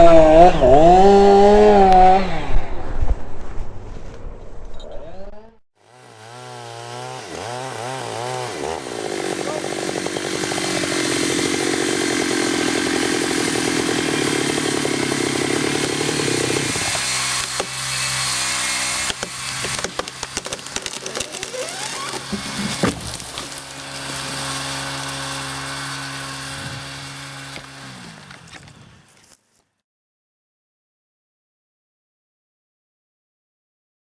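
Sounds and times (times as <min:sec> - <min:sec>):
chainsaw running: 0:00.0 - 0:02.8, 0:05.1 - 0:29.4.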